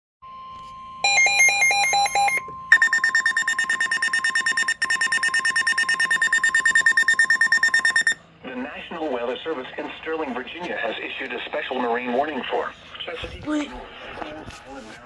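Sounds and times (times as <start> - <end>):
electronic alarm beeping: 0.2 - 8.2
steady high alert tone: 0.9 - 8.2.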